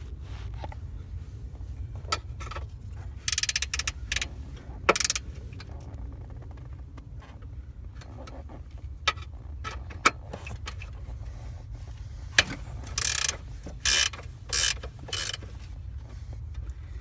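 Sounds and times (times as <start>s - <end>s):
ratchet wrench clicking: 3.2s - 5.4s, 12.4s - 15.7s.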